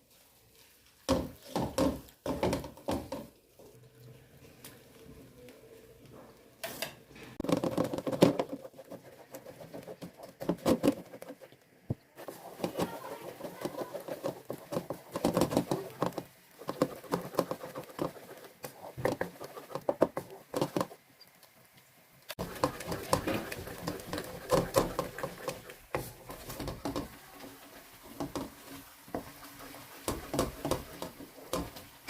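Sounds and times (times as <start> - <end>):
kitchen utensils knocking and scraping: 6.7 - 11.5, 12.2 - 21.0, 22.4 - 32.0.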